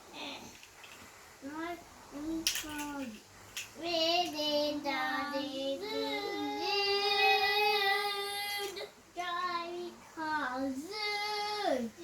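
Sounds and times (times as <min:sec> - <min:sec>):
child singing: 0:03.8 - 0:12.0.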